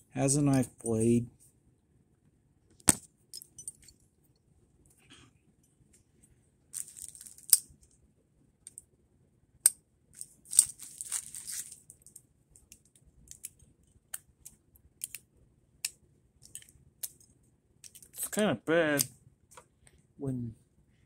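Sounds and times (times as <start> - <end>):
multi-tool metal clicks and scrapes: 12.6 - 15.2.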